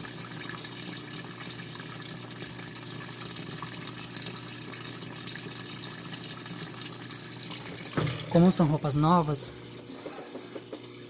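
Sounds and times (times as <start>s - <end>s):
water pouring into washing machine: 0.0s - 11.0s
low steady hum: 7.4s - 10.0s.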